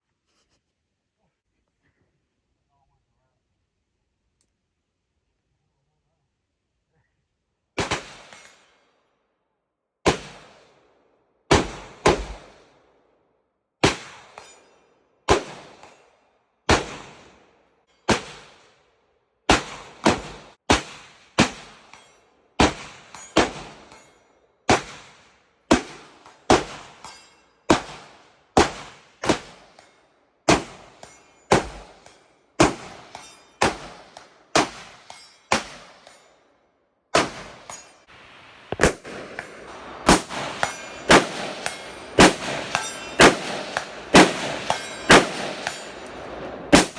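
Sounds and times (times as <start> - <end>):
rifle shots ringing: 37.2 - 46.9.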